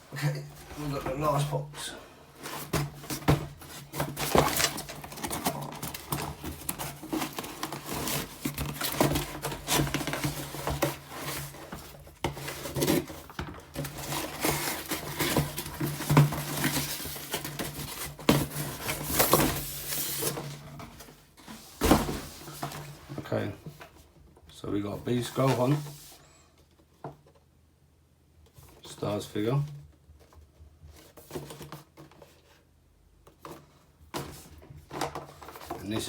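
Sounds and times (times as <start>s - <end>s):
cardboard box rustling and scraping: 2.2s - 24.1s, 33.4s - 36.0s.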